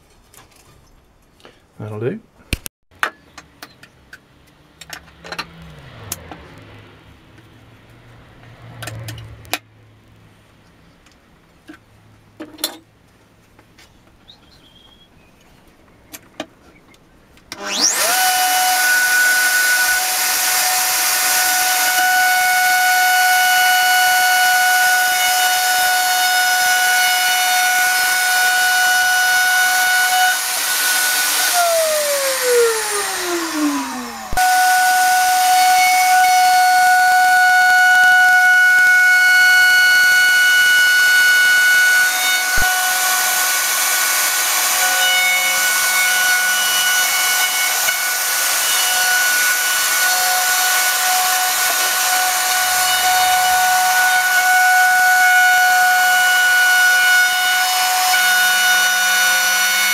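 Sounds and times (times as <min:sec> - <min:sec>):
electric router whining: 0:17.5 - 0:59.9.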